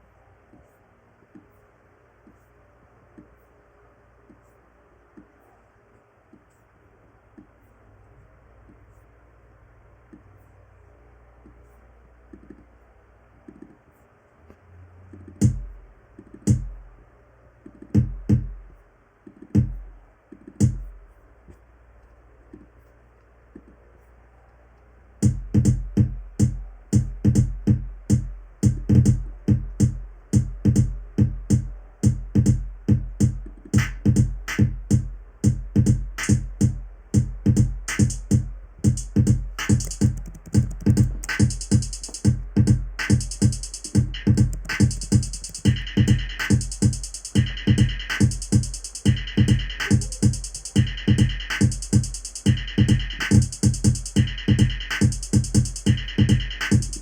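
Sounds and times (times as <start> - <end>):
heavy kick drums: 15.4 - 15.8, 16.5 - 16.8, 18.0 - 18.6, 19.6 - 19.9, 20.6 - 20.9, 25.2 - 57.0
hissing hi-hat: 36.2 - 57.0.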